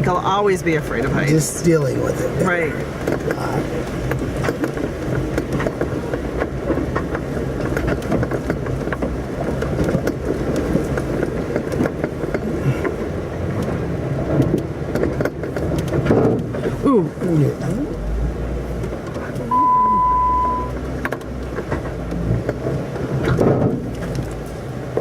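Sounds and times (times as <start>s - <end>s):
vehicle engine running at low speed: 0.0s - 25.0s
small knocks and rattles: 2.9s - 16.8s, 21.0s - 25.0s.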